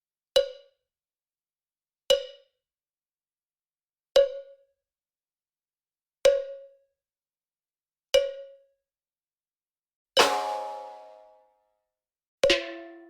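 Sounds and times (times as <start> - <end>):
pitched percussive strikes: 10.2 - 11.5.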